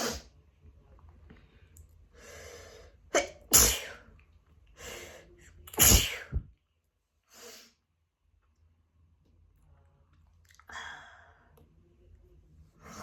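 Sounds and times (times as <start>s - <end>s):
person sneezing: 3.1s - 4.0s, 5.8s - 6.5s.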